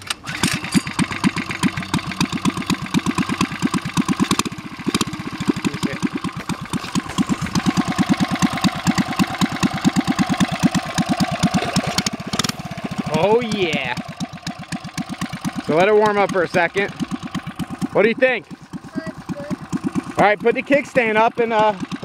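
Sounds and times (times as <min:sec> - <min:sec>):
small engine starting and running: 0:00.0 - 0:22.0.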